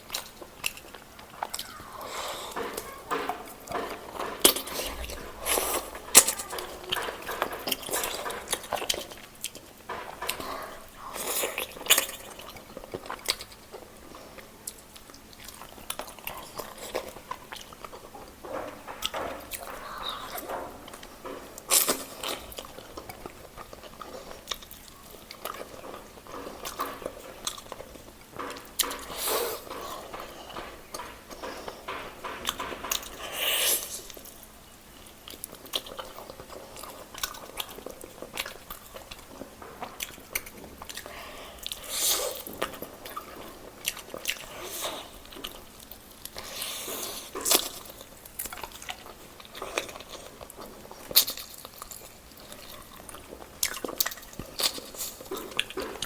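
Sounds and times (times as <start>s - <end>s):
chewing roast chicken: 0.0s - 56.0s.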